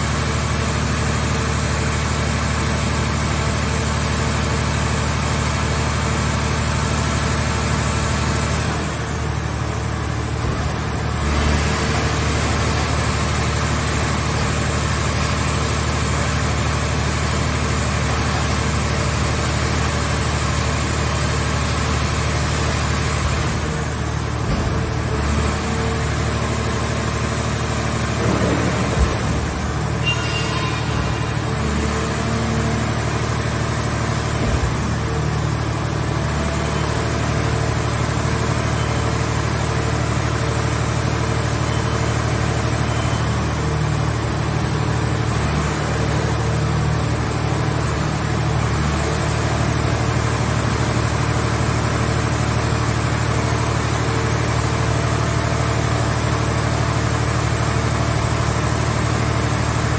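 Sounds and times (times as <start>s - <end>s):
engine running steadily: 0.0s - 59.9s
thin high whine: 29.7s - 33.2s.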